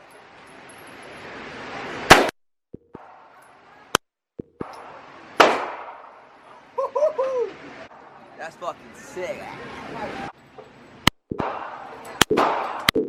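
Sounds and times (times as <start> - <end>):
loud gunshots: 2.1 - 2.3, 4.8 - 6.1, 11.4 - 12.9
short sharp gunshot crack: 2.1 - 2.3, 4.7 - 6.1, 11.4 - 12.9.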